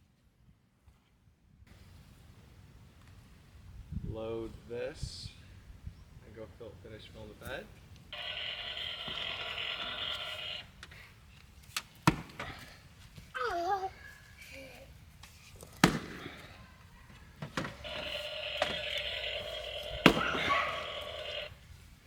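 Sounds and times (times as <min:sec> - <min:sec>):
steady multi-tone hum: 0:08.1 - 0:13.1, 0:15.8 - 0:22.0
firewood splitting strikes: 0:11.7 - 0:12.8, 0:15.6 - 0:16.6, 0:17.4 - 0:21.4.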